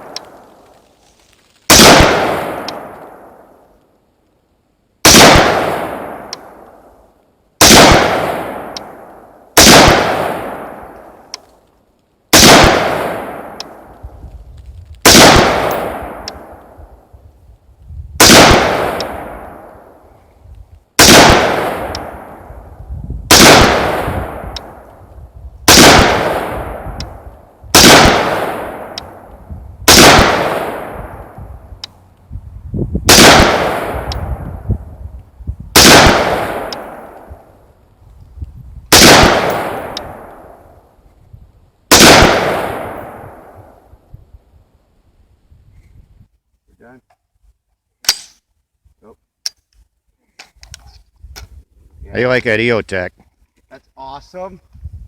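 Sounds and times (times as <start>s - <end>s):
rifle single shots: 0.0s - 0.7s, 1.7s - 3.6s, 5.0s - 6.9s, 7.6s - 11.4s, 12.3s - 13.9s, 15.0s - 16.8s, 18.2s - 20.0s, 21.0s - 22.5s, 23.3s - 25.0s, 25.7s - 31.4s, 33.1s - 34.7s, 35.7s - 37.5s, 38.9s - 40.7s, 41.9s - 43.8s, 48.0s - 48.4s.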